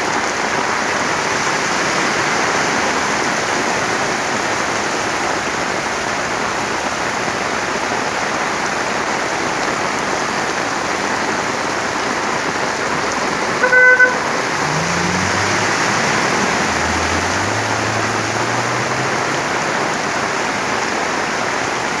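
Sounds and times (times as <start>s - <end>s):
heavy rain pouring: 0.0s - 22.0s
vehicle engine passing: 13.3s - 21.8s
vehicle horn toot: 13.6s - 14.8s.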